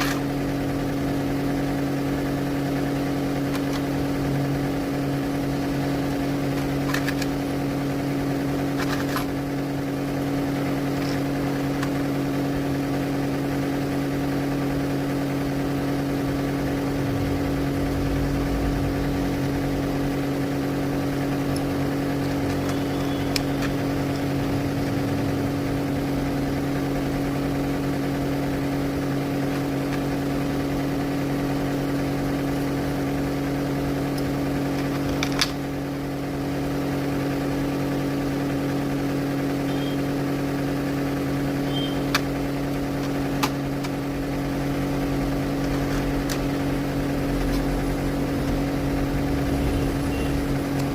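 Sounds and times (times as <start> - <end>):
steady mechanical hum: 0.0 - 50.9.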